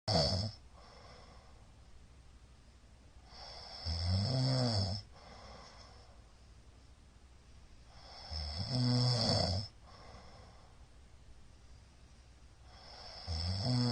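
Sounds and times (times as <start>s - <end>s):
man snoring loudly: 0.1s - 0.6s, 3.3s - 5.1s, 8.0s - 9.7s, 12.8s - 13.9s
quiet breathing: 0.2s - 13.9s.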